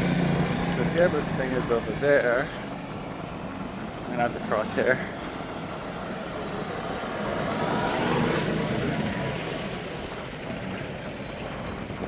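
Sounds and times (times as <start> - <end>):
motor vehicle passing by: 0.0 - 2.2, 5.4 - 12.0.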